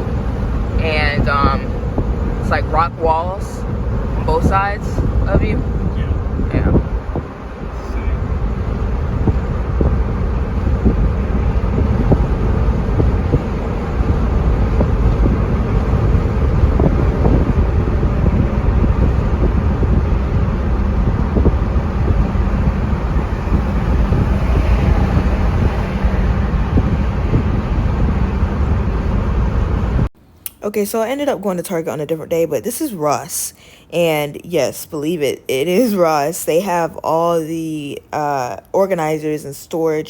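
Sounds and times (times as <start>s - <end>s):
car driving on road: 0.0s - 30.1s.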